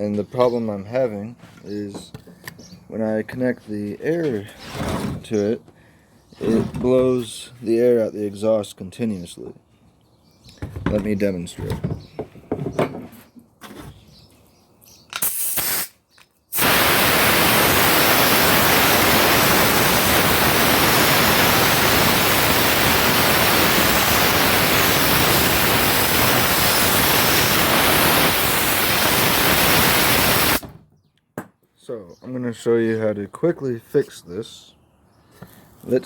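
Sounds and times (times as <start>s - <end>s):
compressed air hissing: 15.2s - 30.7s.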